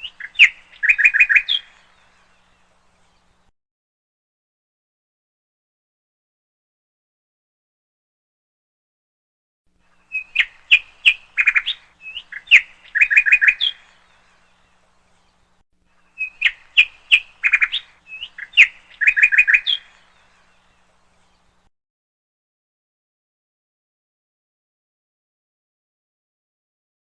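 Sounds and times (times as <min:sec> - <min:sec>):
small bird chirps and trills: 0:00.0 - 0:03.5, 0:09.8 - 0:21.7.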